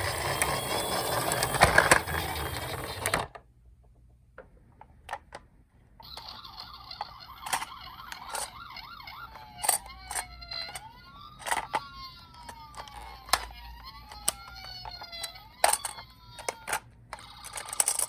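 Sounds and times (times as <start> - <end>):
fast warbling toy siren: 0.0 - 3.2, 6.0 - 18.0
slow wailing toy siren: 0.0 - 3.2, 6.0 - 18.0.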